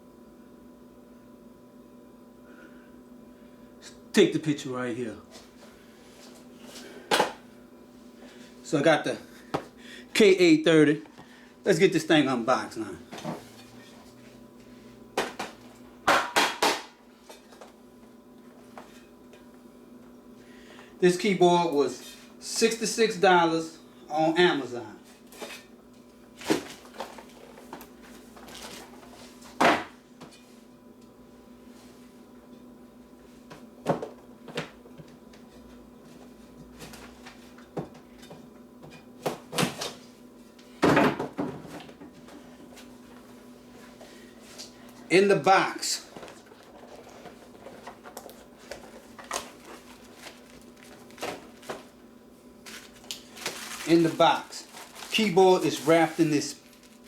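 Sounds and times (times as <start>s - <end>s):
faint steady hum: 0.0s - 57.0s
cardboard and paper rustling: 26.4s - 29.4s, 46.1s - 52.0s, 52.6s - 57.0s.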